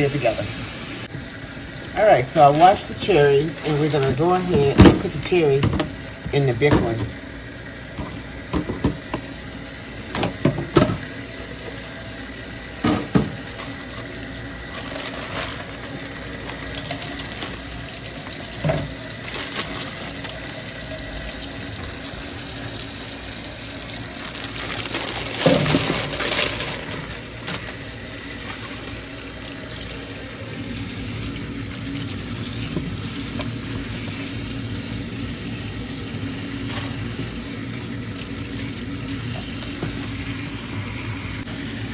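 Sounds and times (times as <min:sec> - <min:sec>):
tap water running into sink: 0:00.0 - 0:41.9.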